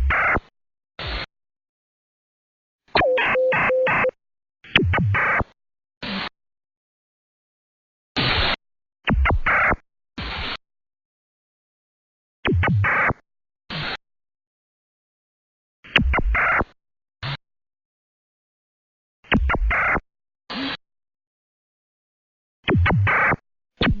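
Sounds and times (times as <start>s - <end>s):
radio signal blurping and chirping: 3.0s - 4.1s.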